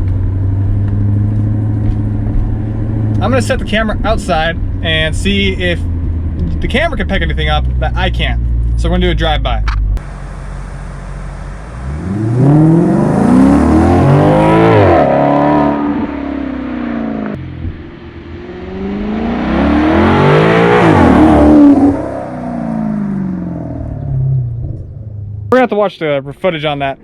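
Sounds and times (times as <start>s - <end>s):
car engine accelerating past: 11.4s - 25.3s.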